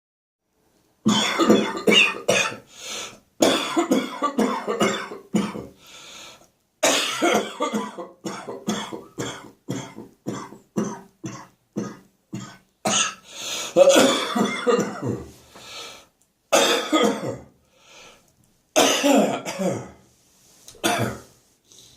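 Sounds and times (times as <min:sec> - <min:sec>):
person coughing: 0:01.1 - 0:02.7, 0:03.4 - 0:05.8, 0:06.8 - 0:15.4, 0:16.6 - 0:17.5, 0:18.8 - 0:20.0, 0:20.8 - 0:21.3.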